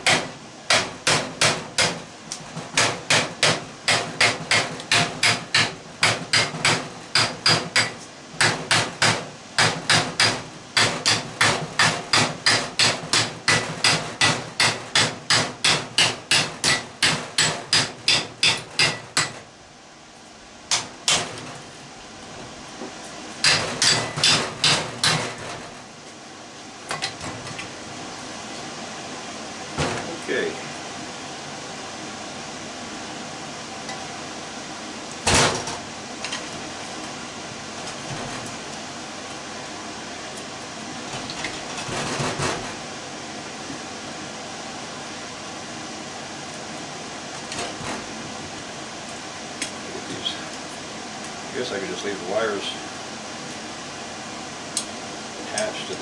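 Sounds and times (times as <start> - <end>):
hammer blows on metal motor: 2.7 - 19.5.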